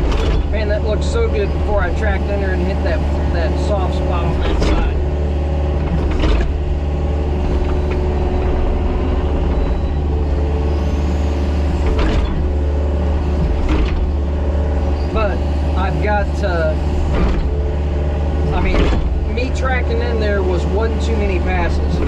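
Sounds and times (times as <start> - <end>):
excavator diesel engine running: 0.0 - 22.0
machine clunks: 5.8 - 8.6, 11.8 - 12.6, 18.6 - 19.3.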